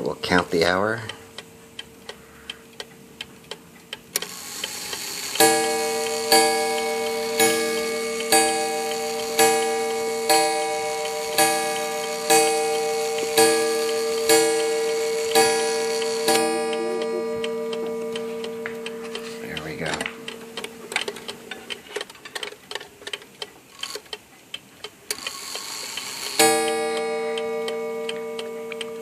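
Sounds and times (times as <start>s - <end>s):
mantel clock ticking: 0.0s - 29.0s
clock striking a gong: 4.7s - 21.8s, 26.1s - 29.0s.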